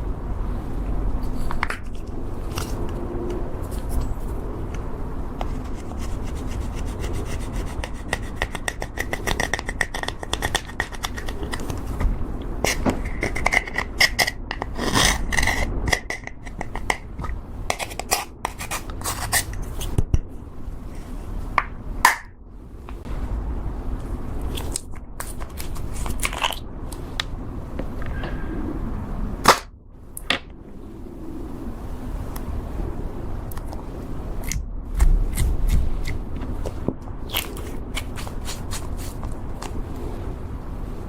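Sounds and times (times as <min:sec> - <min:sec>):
slime rubbing: 0:34.9 - 0:39.8.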